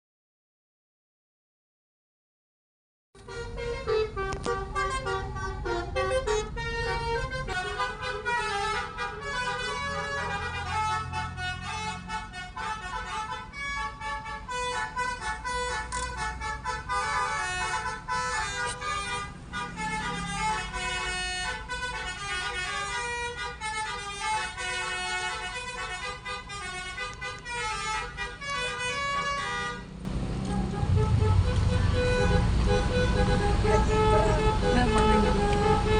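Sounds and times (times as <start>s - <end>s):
bus engine running: 3.2s - 35.9s
musical bus horn tune: 3.2s - 35.9s.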